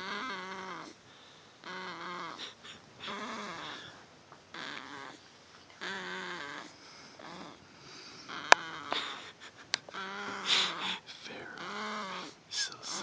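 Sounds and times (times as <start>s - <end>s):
pet snoring: 0.0s - 1.0s, 1.6s - 5.2s, 5.8s - 7.6s, 8.3s - 9.1s, 11.6s - 12.4s.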